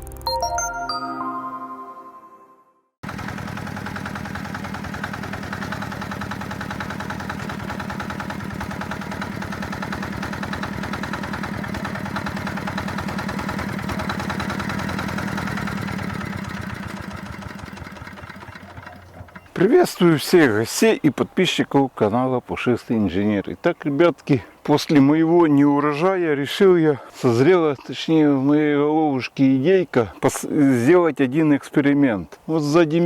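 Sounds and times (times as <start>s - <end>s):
tractor engine running: 3.0s - 19.9s.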